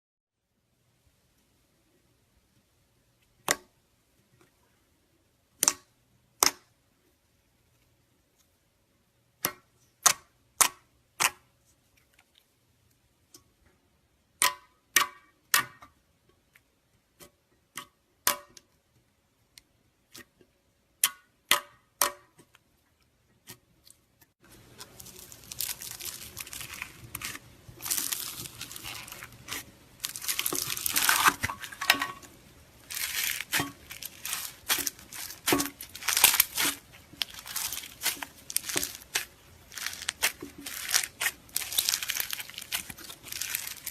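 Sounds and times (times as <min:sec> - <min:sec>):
slime crackly squishing: 0:23.8 - 0:43.9.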